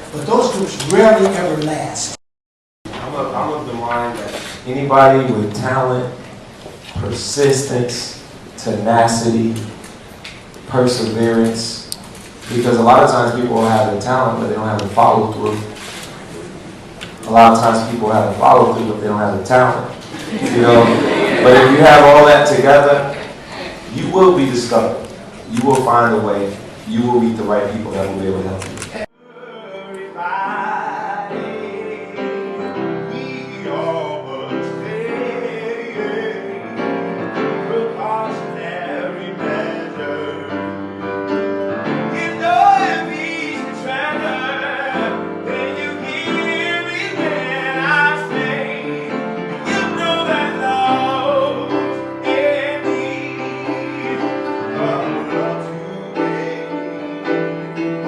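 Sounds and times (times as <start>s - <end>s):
piano and band accompaniment: 2.9s - 58.0s
person singing: 29.0s - 41.0s, 42.0s - 57.1s.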